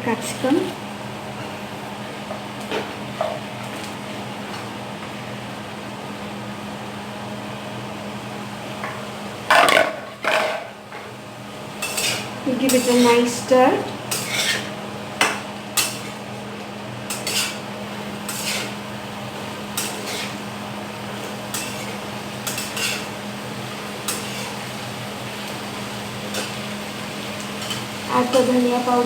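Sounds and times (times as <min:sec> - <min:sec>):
spoon scraping and clinking pan: 0:17.1 - 0:17.6.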